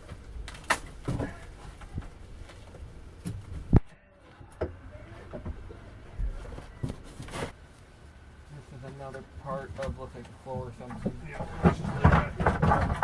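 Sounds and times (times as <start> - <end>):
knocks and thumps: 9.7 - 13.0.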